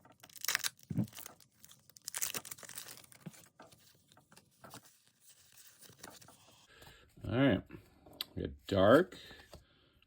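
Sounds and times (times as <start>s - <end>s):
foil wrapper tearing and crinkling: 0.0s - 3.4s.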